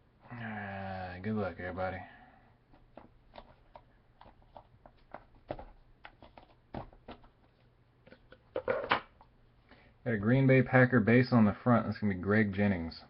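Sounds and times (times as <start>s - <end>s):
clicks and rustling of packaging: 2.7s - 9.3s.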